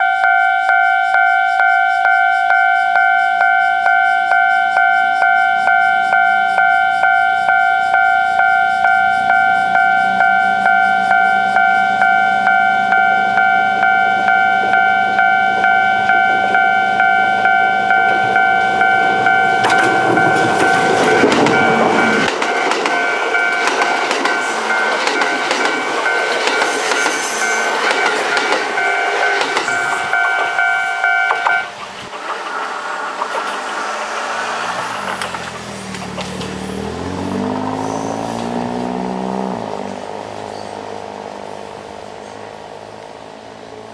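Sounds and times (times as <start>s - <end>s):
level crossing bell ringing: 0.0s - 31.8s
wheel-on-rail noise: 5.4s - 43.9s
train rumble: 5.6s - 43.9s.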